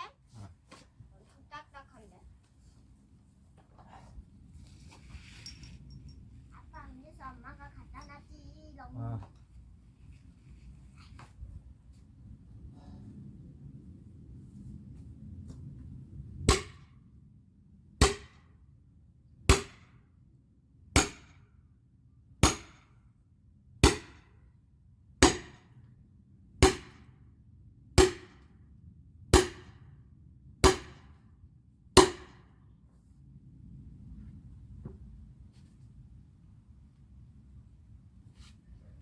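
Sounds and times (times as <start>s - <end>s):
axe chopping firewood: 16.5s - 16.8s, 18.0s - 18.4s, 19.5s - 19.8s, 21.0s - 21.2s, 22.4s - 22.7s, 23.8s - 24.2s, 25.2s - 25.6s, 26.6s - 27.0s, 28.0s - 28.4s, 29.4s - 29.7s, 30.6s - 31.1s, 32.0s - 32.4s.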